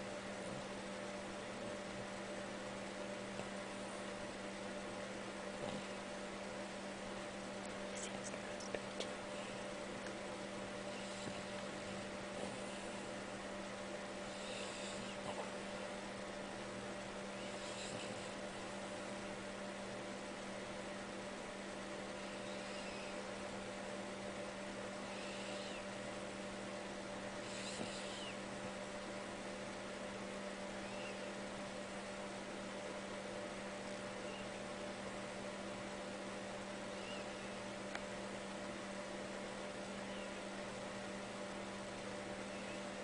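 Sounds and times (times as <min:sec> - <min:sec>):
steady electrical hum: 0:00.0 - 0:43.0
high whistling snores: 0:22.3 - 0:23.2, 0:25.0 - 0:25.9, 0:27.4 - 0:28.4, 0:30.8 - 0:31.3, 0:36.9 - 0:37.6.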